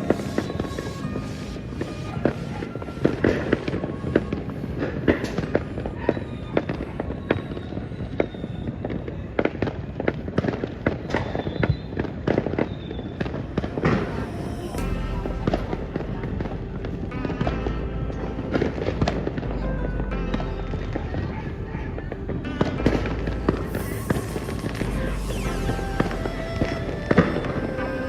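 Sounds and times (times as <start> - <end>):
music playing: 0.0 - 6.1, 13.3 - 28.0
fireworks bangs and crackles: 0.0 - 19.4, 20.9 - 28.0.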